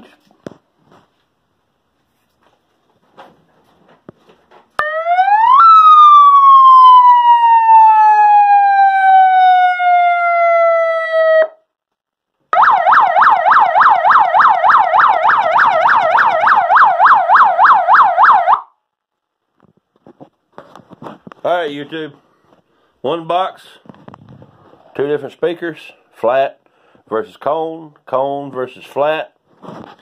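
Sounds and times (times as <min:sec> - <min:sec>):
police siren wail: 0:04.8 - 0:11.6, 0:12.6 - 0:18.7
police siren yelp: 0:04.8 - 0:11.6, 0:12.6 - 0:18.7.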